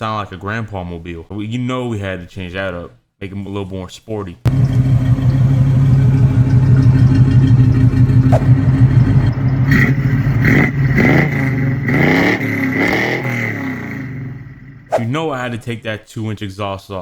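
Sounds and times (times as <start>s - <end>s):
car engine idling and revving: 4.5s - 14.9s.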